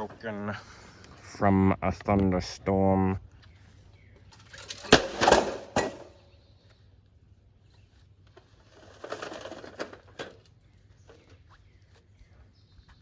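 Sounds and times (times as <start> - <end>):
hard objects clattering: 4.3 - 6.2, 8.8 - 10.4.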